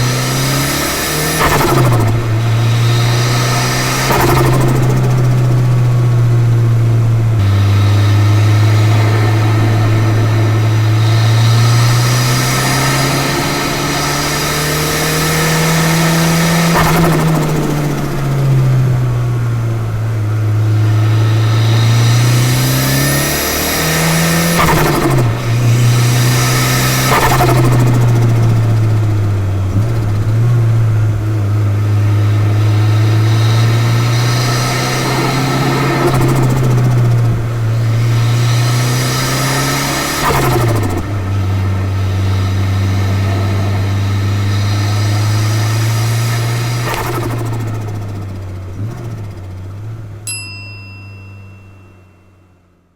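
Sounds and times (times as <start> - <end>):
blow-off valve bursts: 0.0 - 6.1, 7.4 - 18.2
car engine accelerating: 0.0 - 50.2.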